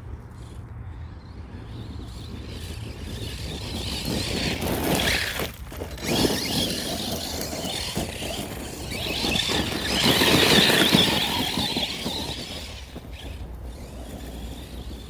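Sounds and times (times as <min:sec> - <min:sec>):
rc car motor whining: 0:00.2 - 0:15.0
tyres crunching on gravel: 0:03.4 - 0:15.0.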